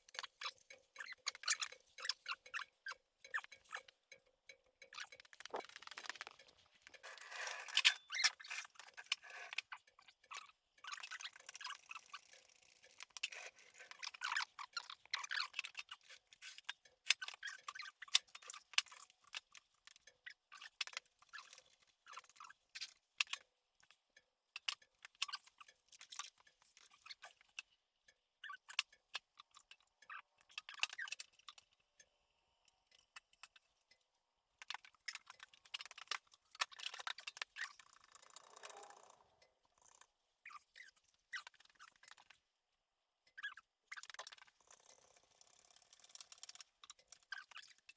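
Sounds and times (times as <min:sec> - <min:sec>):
metal parts and tools clinking: 0:04.9 - 0:09.7.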